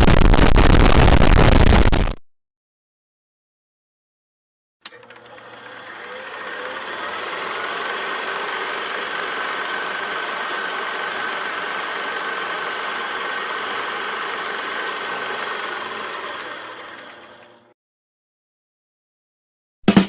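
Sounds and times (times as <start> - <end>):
engine running with rattle: 4.9 - 17.7.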